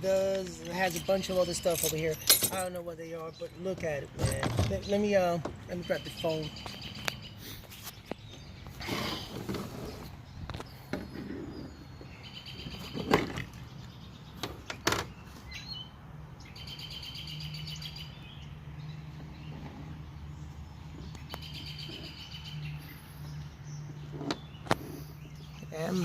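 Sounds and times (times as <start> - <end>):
handling knocks and clicks: 0.0 - 2.8, 3.5 - 5.6
birds chirping in trills: 0.0 - 26.0.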